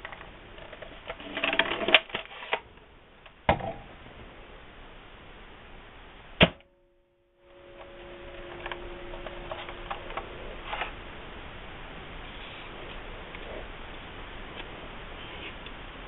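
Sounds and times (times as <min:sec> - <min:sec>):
faint steady ringing: 0:03.8 - 0:15.1.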